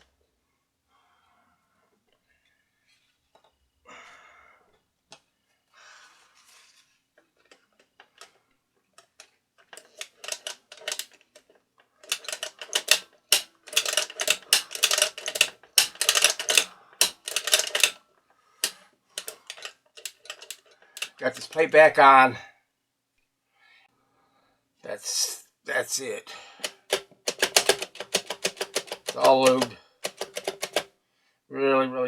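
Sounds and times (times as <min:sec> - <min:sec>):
metallic clicks and rattles: 0:09.0 - 0:18.0, 0:18.6 - 0:21.7, 0:26.6 - 0:30.9.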